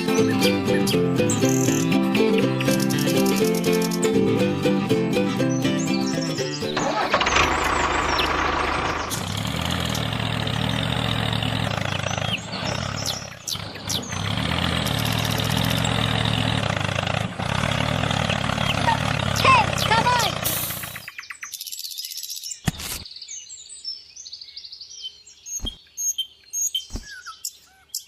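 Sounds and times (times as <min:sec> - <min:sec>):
bird chirps: 0:00.0 - 0:04.2, 0:05.3 - 0:09.3, 0:10.7 - 0:16.4, 0:18.1 - 0:28.0
small engine running: 0:00.0 - 0:04.4, 0:06.1 - 0:21.1.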